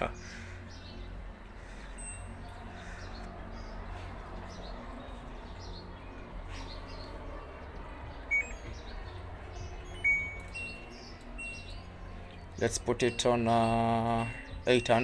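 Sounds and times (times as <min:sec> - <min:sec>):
faint bird chirps: 0:00.0 - 0:15.0
low background hum: 0:00.0 - 0:15.0
washing machine beep: 0:08.3 - 0:08.7, 0:10.0 - 0:11.9, 0:12.8 - 0:15.0.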